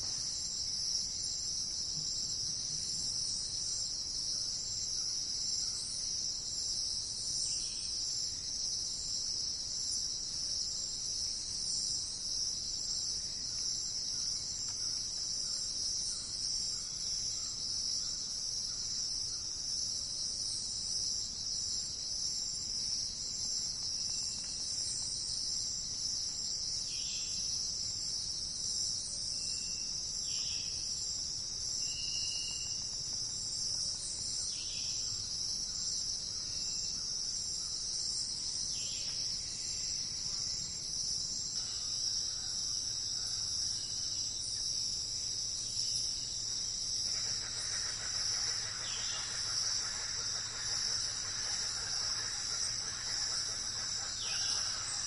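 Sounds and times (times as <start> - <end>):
insects chorus: 0.0 - 55.0.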